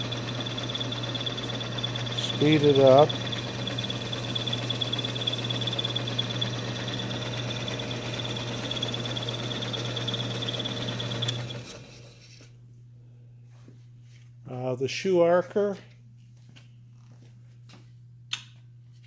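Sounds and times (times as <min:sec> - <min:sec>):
brake lathe motor whining: 0:00.0 - 0:12.3
lathe switch click: 0:11.2 - 0:11.5.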